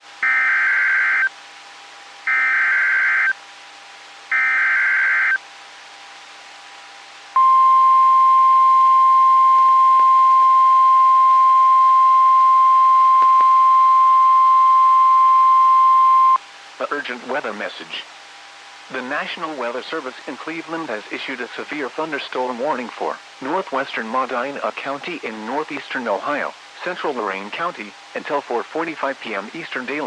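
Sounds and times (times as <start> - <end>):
steady warning alarm tone: 0.2 - 1.3, 2.3 - 3.4, 4.3 - 5.4.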